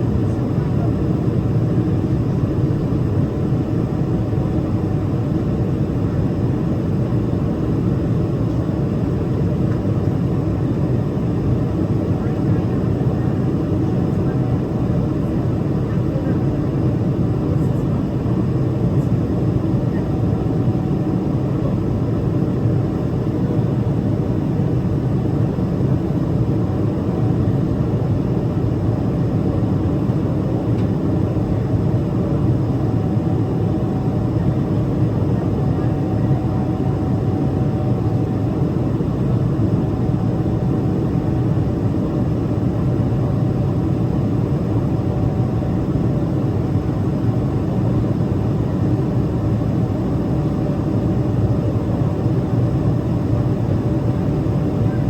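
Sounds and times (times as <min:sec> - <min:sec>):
jet engine rumble: 0:00.0 - 0:55.0.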